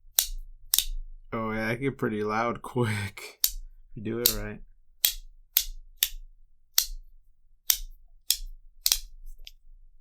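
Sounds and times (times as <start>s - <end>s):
sharp metal clicking snaps: 0.1s - 1.0s, 3.4s - 7.0s, 7.7s - 9.6s.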